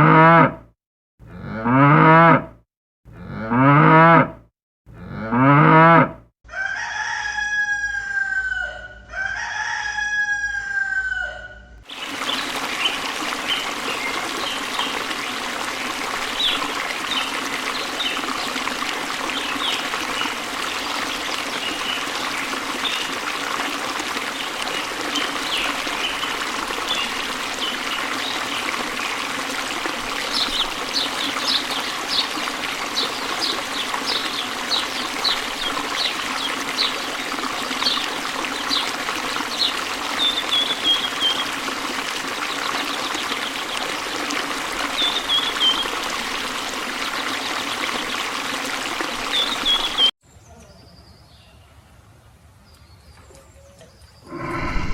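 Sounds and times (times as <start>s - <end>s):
running water trickling: 11.8s - 50.1s.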